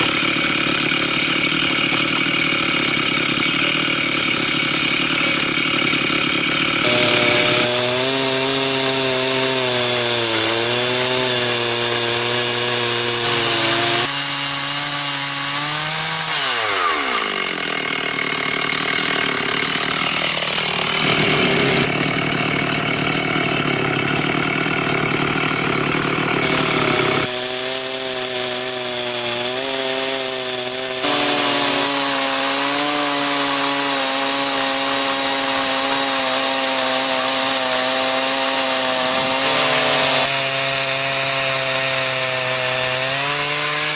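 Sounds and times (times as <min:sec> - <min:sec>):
chainsaw cutting log: 0:00.0 - 0:43.9.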